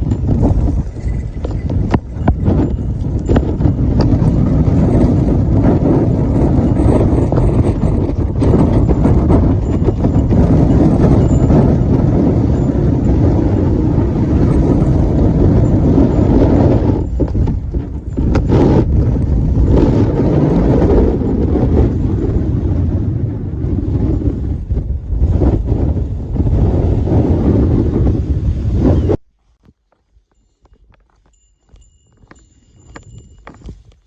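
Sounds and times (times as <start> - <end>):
wind buffeting microphone: 0.0 - 29.3, 30.6 - 34.0.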